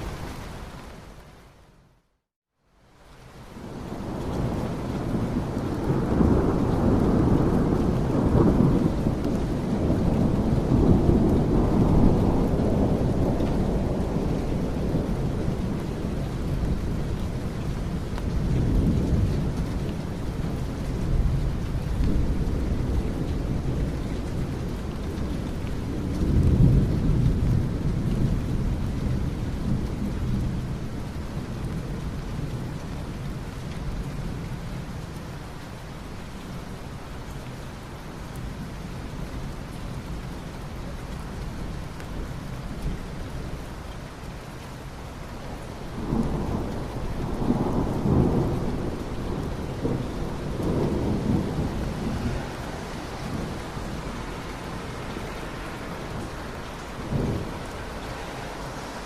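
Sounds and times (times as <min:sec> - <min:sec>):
steady rain: 0:00.0 - 0:59.0
rolling thunder: 0:03.6 - 0:33.4, 0:45.6 - 0:59.0.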